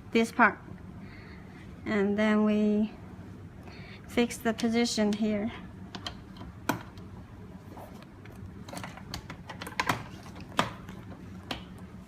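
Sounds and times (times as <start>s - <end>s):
plastic and metal parts clicking: 8.6s - 10.8s.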